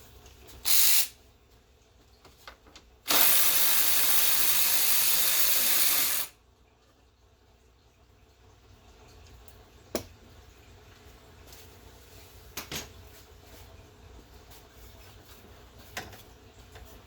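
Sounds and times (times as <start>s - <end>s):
power tool spinning off nuts: 3.1s - 6.3s.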